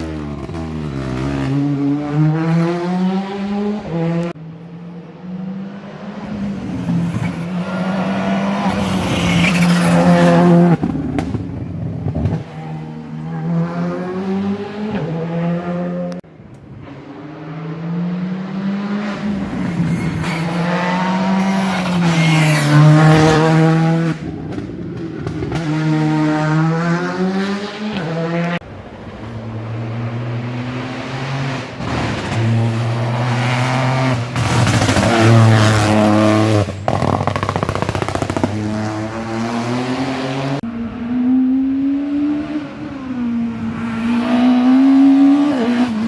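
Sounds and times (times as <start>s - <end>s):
rally car engine revving high: 0.0s - 46.0s
tyre noise: 28.6s - 40.6s.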